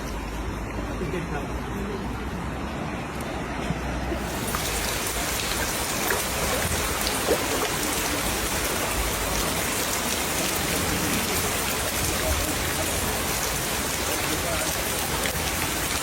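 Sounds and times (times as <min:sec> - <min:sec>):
heavy rain hiss: 0:04.1 - 0:16.0.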